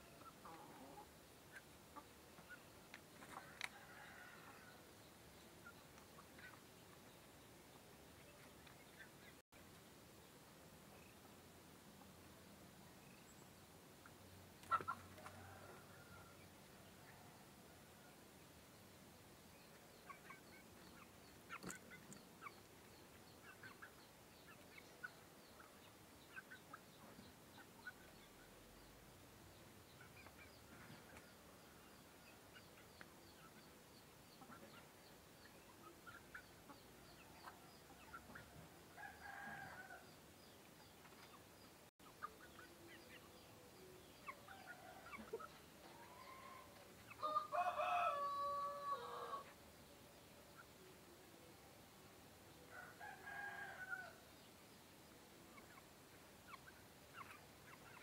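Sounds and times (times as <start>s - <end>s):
chicken clucks and chirps: 0.0s - 9.4s, 13.0s - 28.9s, 29.5s - 51.8s, 52.5s - 58.0s
rooster crowing: 47.2s - 49.4s.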